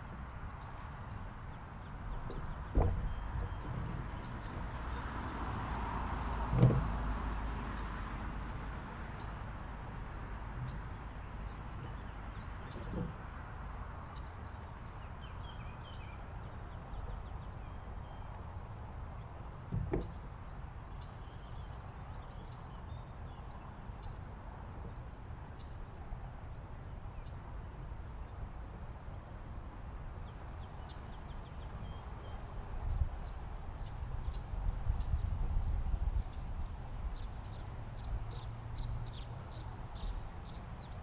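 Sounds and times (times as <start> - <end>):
short dull knocks: 2.2 - 4.6, 6.5 - 7.0, 19.7 - 20.2.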